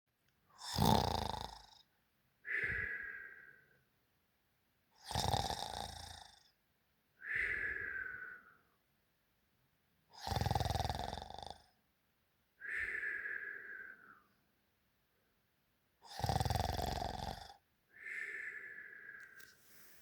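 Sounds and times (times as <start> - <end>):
person snoring: 0.6 - 1.8, 5.0 - 6.5, 10.2 - 11.7, 16.0 - 18.9
whistling breath: 2.4 - 3.9, 7.2 - 8.8, 12.6 - 14.4, 17.9 - 20.0.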